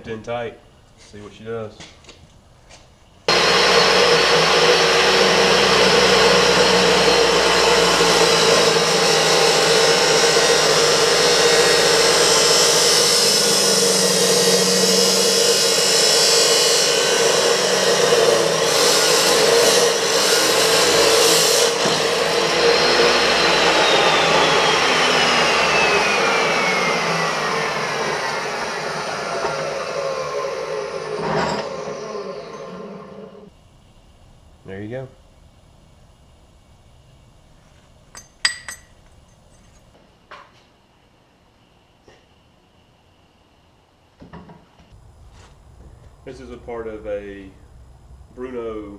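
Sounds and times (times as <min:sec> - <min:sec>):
chop saw grinding through metal: 0:03.3 - 0:33.4
saw winding down whine: 0:03.3 - 0:33.5, 0:45.0 - 0:48.9.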